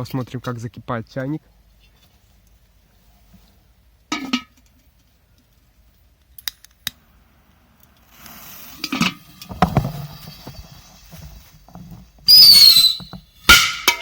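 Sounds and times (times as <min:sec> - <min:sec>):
firecracker hissing: 0:07.0 - 0:11.0, 0:12.3 - 0:13.6.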